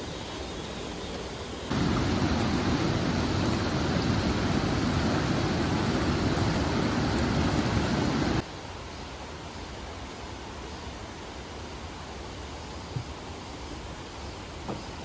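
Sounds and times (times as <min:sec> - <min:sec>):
stream water rushing: 0:01.7 - 0:08.4.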